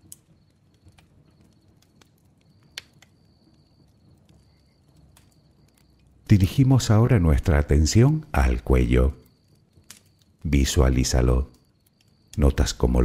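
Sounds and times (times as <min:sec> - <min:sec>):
faint campfire crackling: 0:00.0 - 0:13.0.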